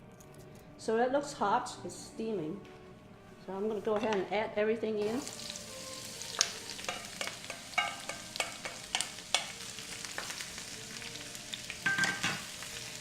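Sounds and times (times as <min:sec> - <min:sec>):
cabbage sizzling in frying pan: 0:05.0 - 0:13.0.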